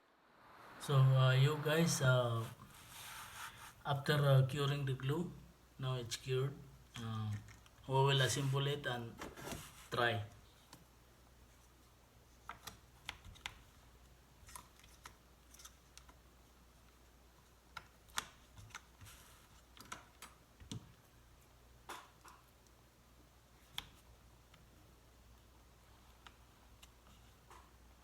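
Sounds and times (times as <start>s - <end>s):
low steady hum: 0.0s - 18.0s.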